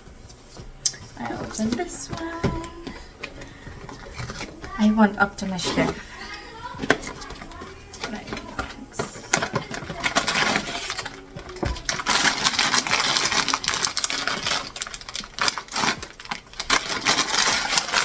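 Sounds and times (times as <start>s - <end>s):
clicks and small rattles: 5.7s - 18.0s
packaging crinkling and tearing: 5.7s - 18.0s.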